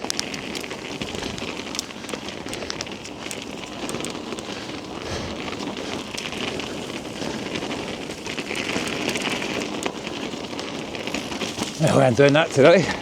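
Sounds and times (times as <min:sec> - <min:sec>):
bike clicks and knocks: 0:00.0 - 0:13.0
tyres crackling on mud: 0:00.0 - 0:13.0
heavy breathing: 0:04.4 - 0:07.9, 0:12.8 - 0:13.0.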